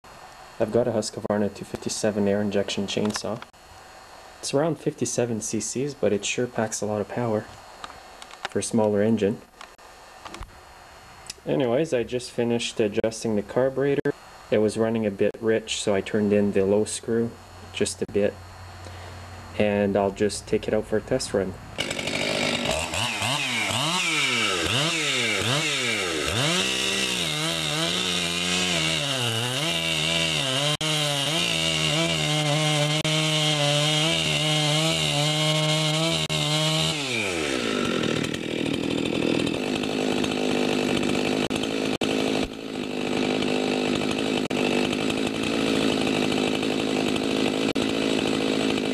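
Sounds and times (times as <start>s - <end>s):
chainsaw cutting wood: 0.1s - 4.6s, 5.2s - 11.4s, 21.8s - 48.9s
chainsaw revving: 21.8s - 48.9s.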